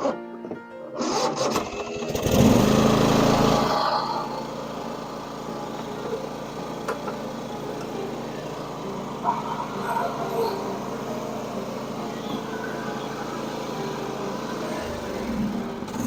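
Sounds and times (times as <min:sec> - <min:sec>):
lawn mower engine starting: 0:00.0 - 0:16.0.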